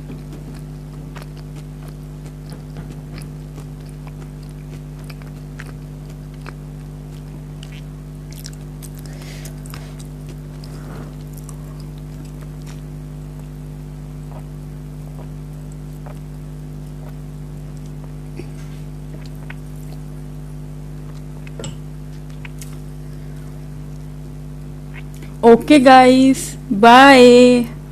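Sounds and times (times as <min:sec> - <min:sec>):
chewing and mouth sounds: 0:00.0 - 0:13.5, 0:14.2 - 0:20.2, 0:21.0 - 0:22.9, 0:24.9 - 0:25.4
low electrical hum: 0:00.0 - 0:27.9.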